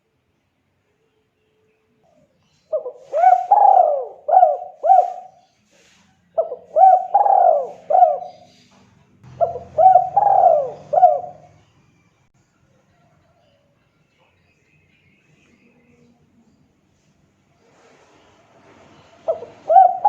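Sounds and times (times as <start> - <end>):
dove cooing: 2.1 - 8.7, 9.3 - 11.7, 19.1 - 20.0.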